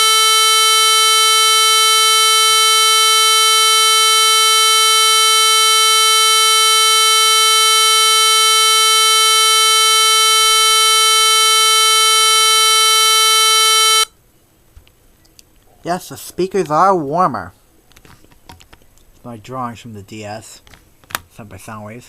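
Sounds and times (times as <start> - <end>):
loud buzzing square wave tone: 0.0 - 14.2.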